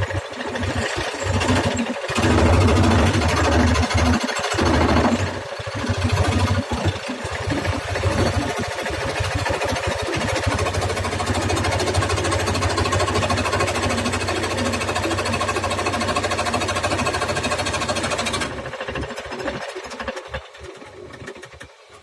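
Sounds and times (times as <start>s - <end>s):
jigsaw cutting wood: 0.0s - 15.2s.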